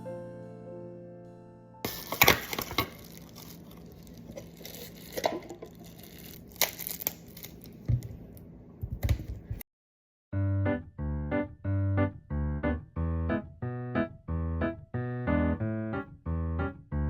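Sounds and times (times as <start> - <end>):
crinkling and rustling: 1.9 - 9.6.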